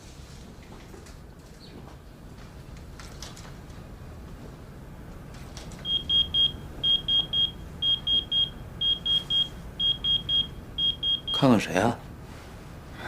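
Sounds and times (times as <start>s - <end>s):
pager beeping: 5.8s - 11.4s.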